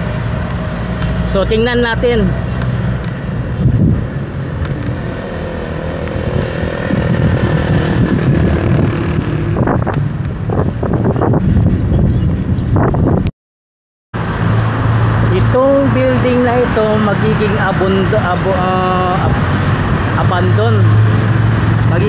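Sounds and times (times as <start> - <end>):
traffic rumble: 0.0 - 13.3, 14.2 - 22.0.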